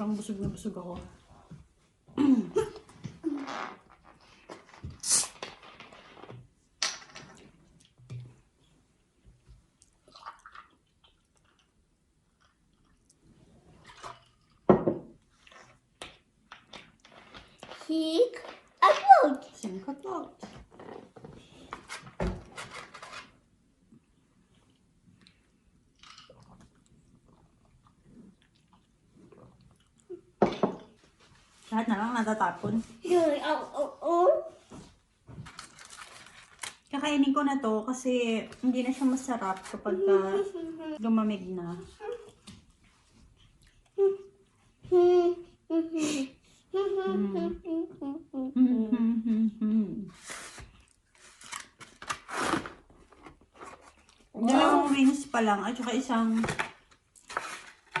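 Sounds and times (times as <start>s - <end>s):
person humming a tune: 44.0s - 44.3s, 44.9s - 50.1s.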